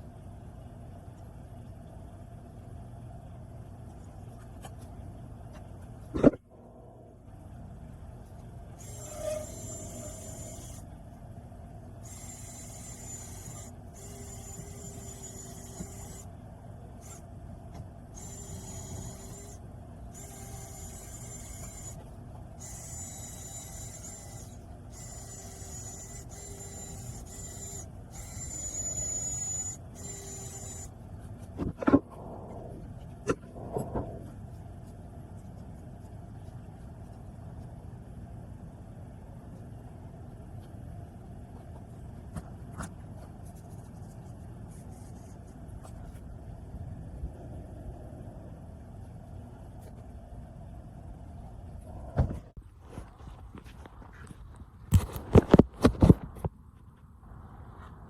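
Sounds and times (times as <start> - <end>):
power tool scraping metal: 8.8 - 10.8, 20.2 - 22.0.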